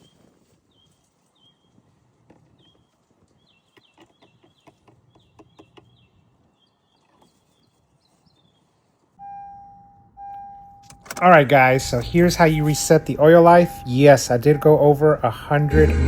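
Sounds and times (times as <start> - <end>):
small bird chirping: 0.0 - 8.9
electronic chime tone: 9.2 - 10.9, 11.7 - 16.0.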